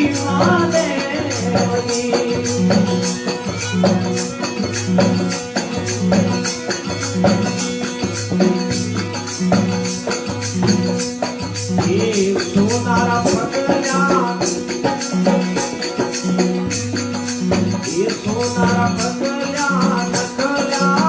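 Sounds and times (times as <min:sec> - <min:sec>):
person singing: 0:00.0 - 0:03.6, 0:11.8 - 0:15.0, 0:17.8 - 0:21.0
folk instrumental music: 0:00.0 - 0:21.0
jingling percussion: 0:00.0 - 0:21.0.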